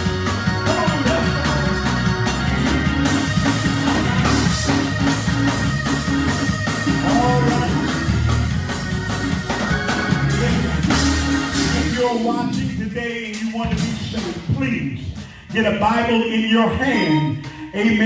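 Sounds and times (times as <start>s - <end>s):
person singing: 0.0s - 2.4s, 6.9s - 8.2s, 10.3s - 14.3s, 16.5s - 18.0s
guitar playing: 0.0s - 12.8s
bass guitar: 0.0s - 16.1s
drum kit: 0.0s - 18.0s.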